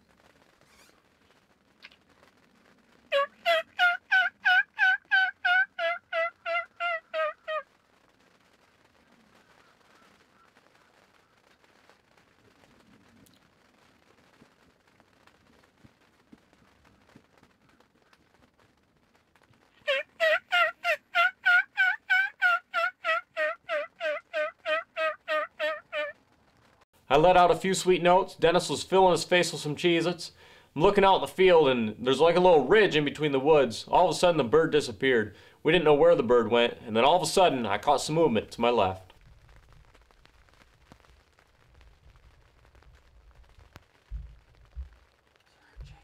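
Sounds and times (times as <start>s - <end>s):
turkey call yelps: 3.1s - 7.7s, 19.8s - 26.2s.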